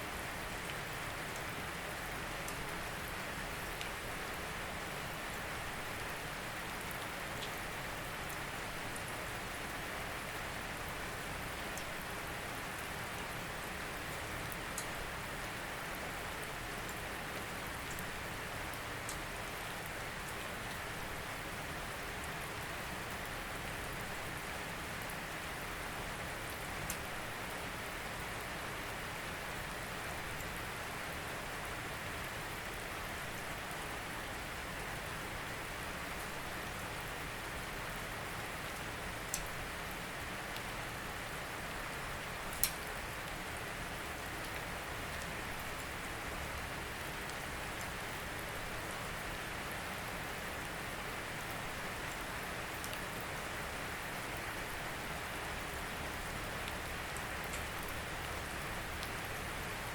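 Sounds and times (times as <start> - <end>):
rain falling: 0.0 - 59.9
sharp drip ticks: 39.3 - 39.5, 42.5 - 42.9.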